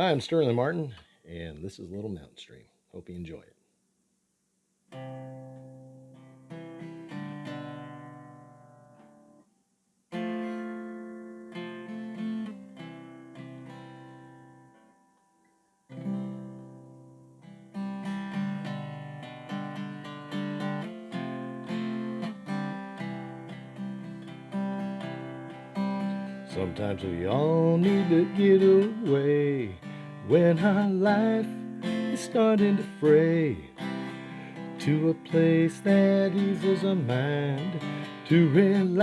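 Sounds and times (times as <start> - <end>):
acoustic guitar playing: 4.9 - 9.5, 10.1 - 39.0.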